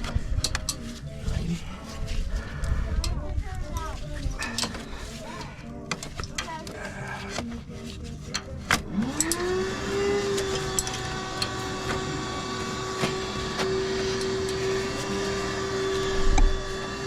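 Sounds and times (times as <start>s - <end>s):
motor humming: 8.7s - 17.0s.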